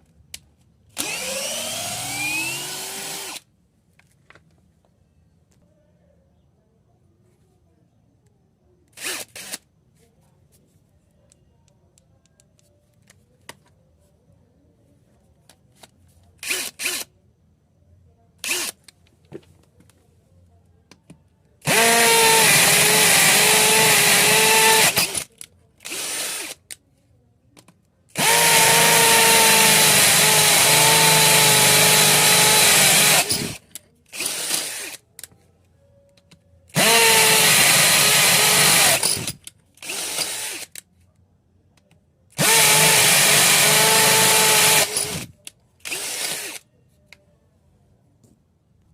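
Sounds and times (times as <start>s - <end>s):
cordless drill whining: 1.0s - 3.4s, 21.6s - 25.2s, 25.8s - 26.6s, 28.2s - 35.0s, 36.8s - 40.7s, 42.4s - 46.6s.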